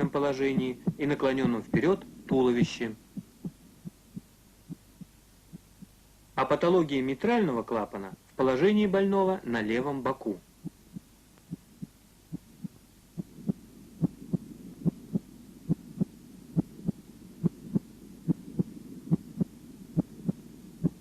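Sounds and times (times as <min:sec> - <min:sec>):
heartbeat through stethoscope: 0:00.4 - 0:02.0, 0:02.6 - 0:06.0, 0:10.6 - 0:21.0.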